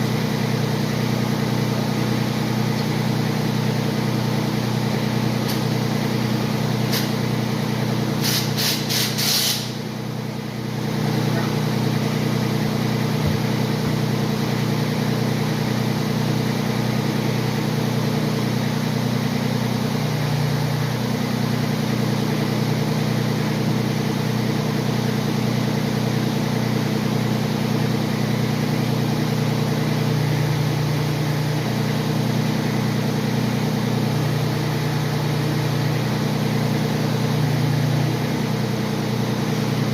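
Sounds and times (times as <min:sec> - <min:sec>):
mower engine running: 0:00.0 - 0:39.9.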